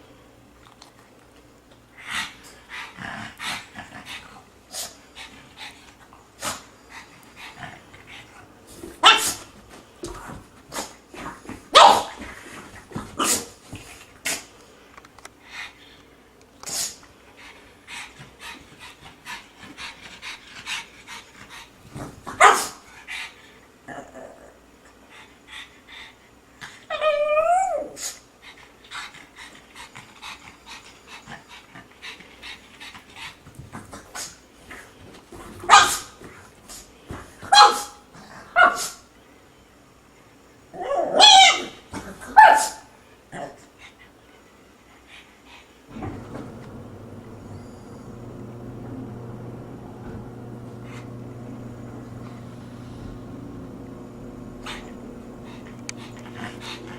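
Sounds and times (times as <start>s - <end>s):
dog barking: 11.8s - 12.2s, 22.4s - 22.8s, 35.7s - 36.1s, 37.5s - 38.0s, 38.6s - 39.0s, 42.4s - 42.9s.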